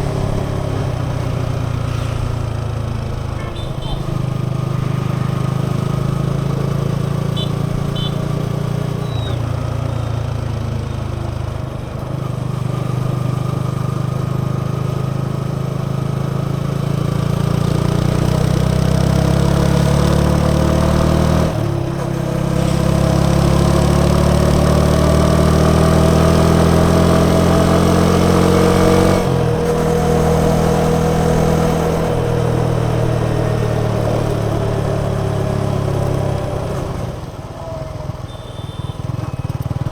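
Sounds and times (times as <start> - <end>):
motorcycle engine accelerating: 0.0 - 39.9.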